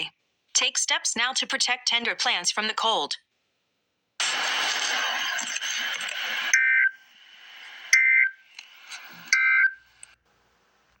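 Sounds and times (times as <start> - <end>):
static hiss: 4.2 - 11.0.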